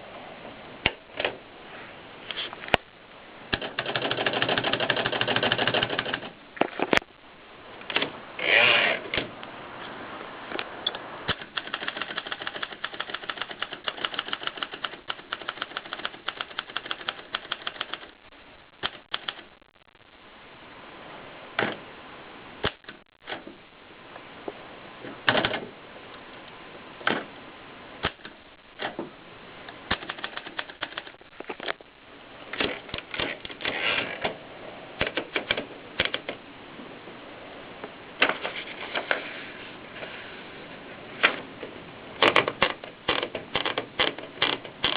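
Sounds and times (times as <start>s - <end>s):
typewriter keystrokes: 3.5s - 6.3s, 11.3s - 18.1s, 18.8s - 19.5s, 29.9s - 31.2s, 35.0s - 36.4s.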